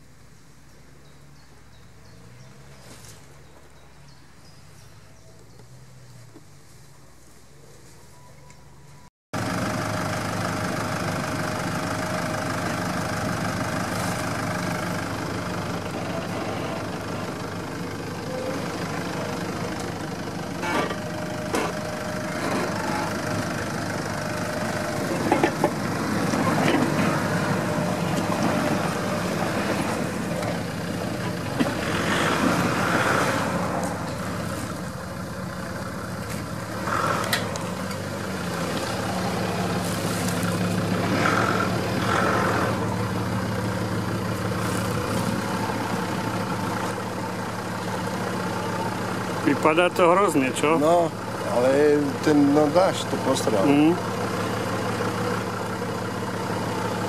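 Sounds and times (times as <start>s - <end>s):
car engine running at low revs: 9.4s - 57.0s
knocks and clunks: 25.0s - 28.8s.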